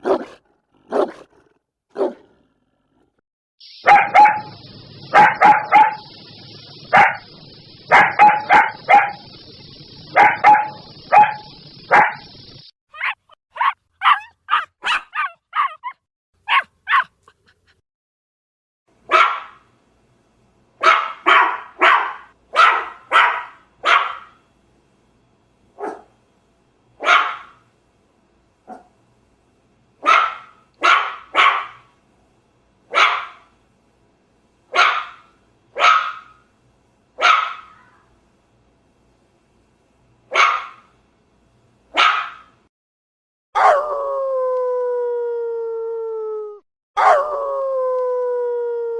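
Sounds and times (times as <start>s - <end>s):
dog barking: 0.0s - 1.2s, 1.9s - 2.2s, 3.8s - 6.1s, 6.9s - 7.3s, 7.9s - 9.2s, 10.1s - 12.2s, 12.9s - 17.1s, 19.1s - 19.6s, 20.8s - 24.4s, 25.8s - 26.1s, 27.0s - 27.6s, 28.7s - 28.9s, 30.0s - 31.9s, 32.9s - 33.5s, 34.7s - 36.4s, 37.2s - 38.0s, 40.3s - 40.9s, 41.9s - 42.6s, 47.0s - 47.2s
dog howling: 43.6s - 48.9s.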